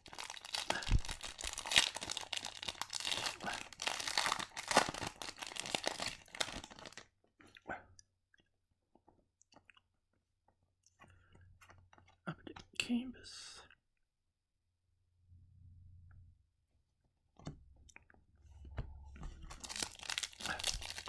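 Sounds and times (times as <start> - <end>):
foil wrapper crinkling: 0.0 - 7.0, 19.5 - 21.0.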